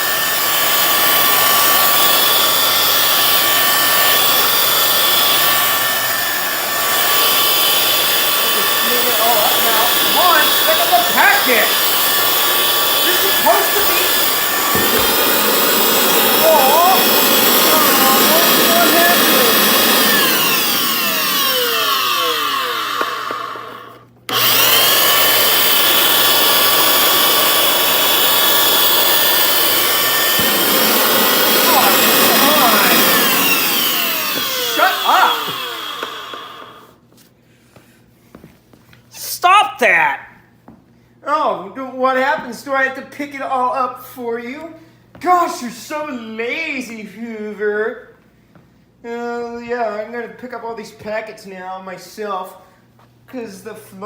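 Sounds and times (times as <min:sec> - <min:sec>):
suction and scrubbing rush: 0:00.0 - 0:22.9, 0:24.3 - 0:36.2
floor cleaner motor whine: 0:00.0 - 0:37.0.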